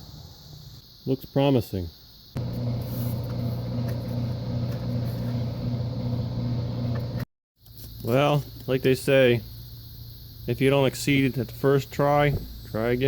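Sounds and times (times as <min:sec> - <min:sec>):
electric air pump humming: 0:02.4 - 0:07.3.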